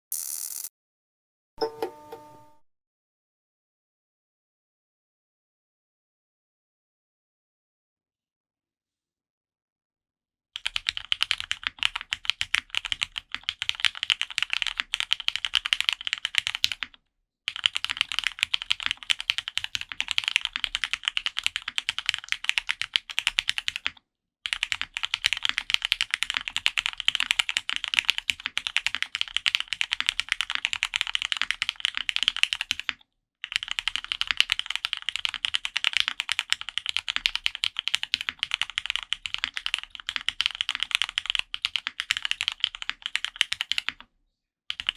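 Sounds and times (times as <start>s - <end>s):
fast typing on mechanical keyboard: 10.6s - 44.1s.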